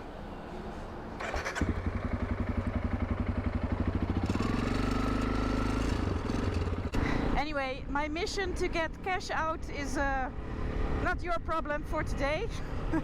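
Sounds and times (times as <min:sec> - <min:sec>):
motorcycle engine starting and revving: 0:01.2 - 0:07.4.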